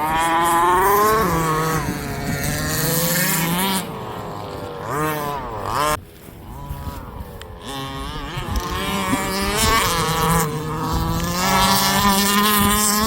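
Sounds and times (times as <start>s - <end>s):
small two-stroke engine revving: 0.0s - 13.0s.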